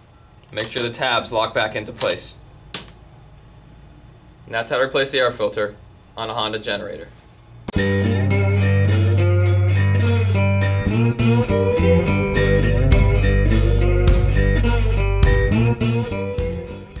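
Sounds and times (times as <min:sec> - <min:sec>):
bluesy guitar tune with beat: 0:07.7 - 0:17.0.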